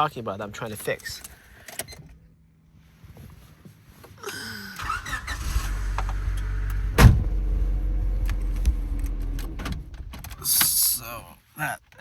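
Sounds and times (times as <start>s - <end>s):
low steady hum: 4.4s - 11.3s
door locks clunk: 6.0s - 7.4s
ignition key turning: 8.2s - 10.8s.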